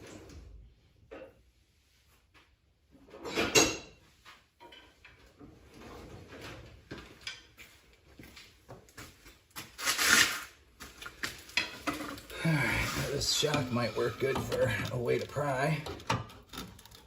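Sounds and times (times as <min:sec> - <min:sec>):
crowbar scraping and knocking metal: 0:11.6 - 0:17.0.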